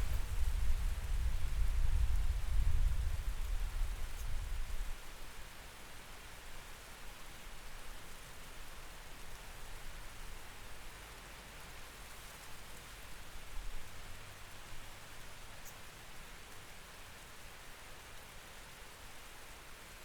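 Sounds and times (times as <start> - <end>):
rain falling: 0.0 - 1.1.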